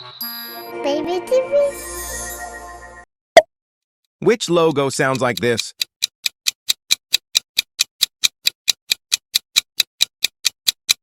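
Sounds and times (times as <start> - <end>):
clock ticking: 4.4 - 11.0.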